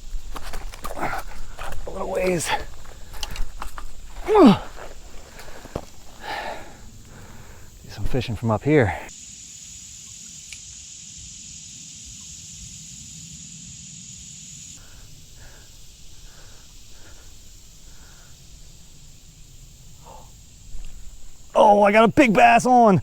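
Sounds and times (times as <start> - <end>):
faint short sounds: 0.0 - 9.1
insects buzzing: 0.0 - 23.0.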